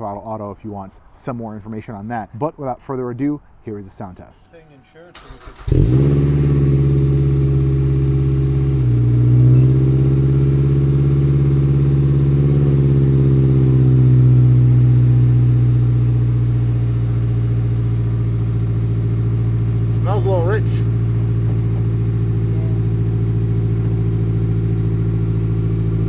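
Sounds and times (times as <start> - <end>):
car engine idling: 5.2 - 26.0.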